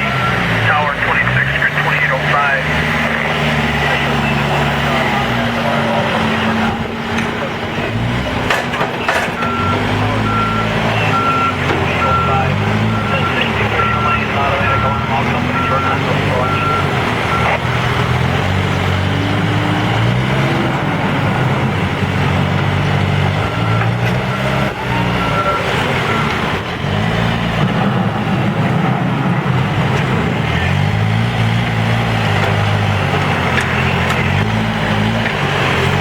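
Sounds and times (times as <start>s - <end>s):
diesel engine under hydraulic load: 0.0s - 36.0s
backup alarm beeping: 6.3s - 17.8s, 23.4s - 26.6s.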